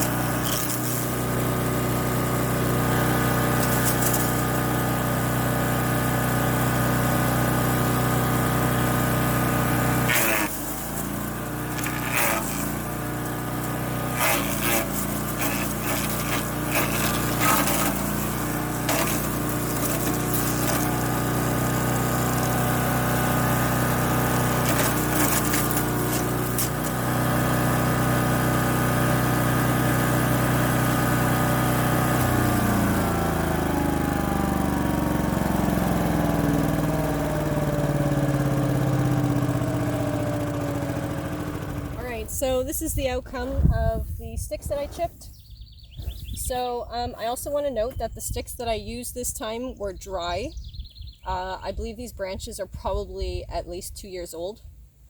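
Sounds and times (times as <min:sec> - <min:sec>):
wood chipper engine running: 0:00.0 - 0:43.7
wood cracking and snapping: 0:10.1 - 0:21.2, 0:24.6 - 0:27.0.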